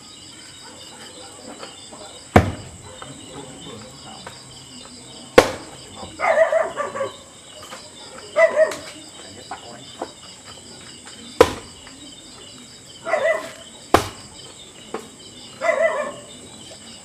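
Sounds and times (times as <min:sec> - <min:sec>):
insects chirping: 0:00.0 - 0:17.0
sharp knocks: 0:02.4 - 0:03.1, 0:05.4 - 0:06.2, 0:11.4 - 0:12.0, 0:13.9 - 0:14.5.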